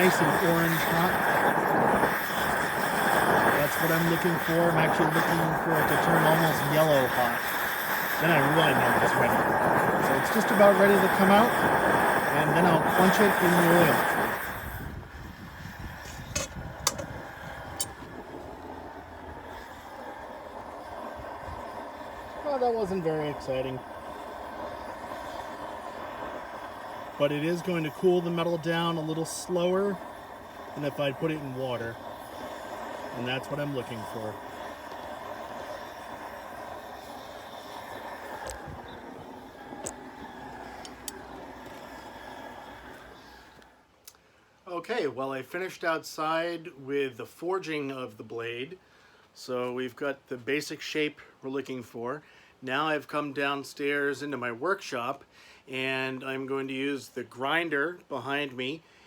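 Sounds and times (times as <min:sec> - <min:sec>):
gas forge burner roaring: 0:00.0 - 0:43.8
low steady rumble: 0:00.0 - 0:43.8.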